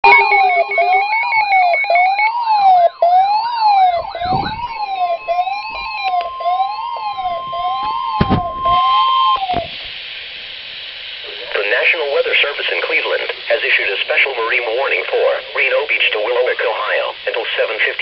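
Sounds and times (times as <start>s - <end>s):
steady alert tone: 0.0s - 9.5s
fast warbling siren: 0.0s - 9.8s
rising and falling siren: 0.0s - 9.8s
two-note siren: 0.0s - 9.8s.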